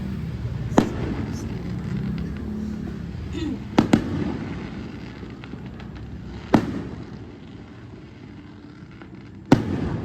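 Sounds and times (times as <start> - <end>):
low steady rumble: 0.0 - 4.7.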